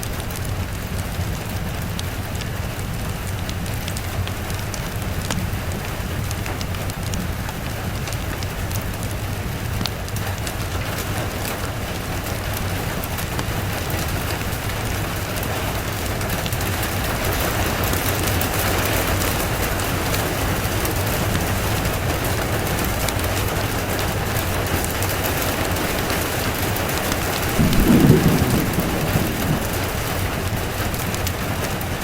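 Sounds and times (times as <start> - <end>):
low continuous rumble: 0.0 - 32.0
steady rain falling: 0.0 - 32.0.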